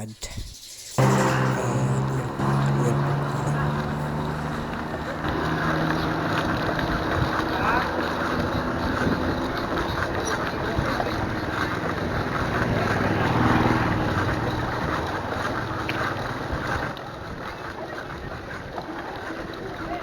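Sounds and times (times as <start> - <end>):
wind rumbling on microphone: 0.3 - 20.0
motor traffic hum: 1.0 - 20.0.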